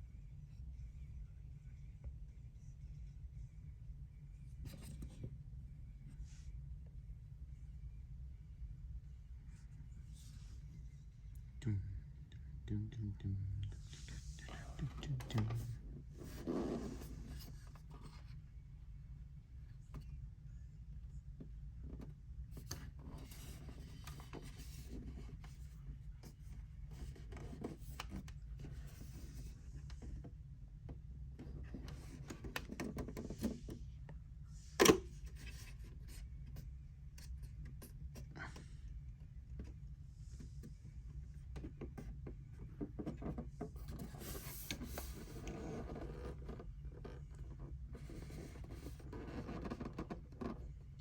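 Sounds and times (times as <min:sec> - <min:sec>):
steady low hum: 0:00.0 - 0:51.0
plastic rubbing and scraping: 0:41.5 - 0:50.8.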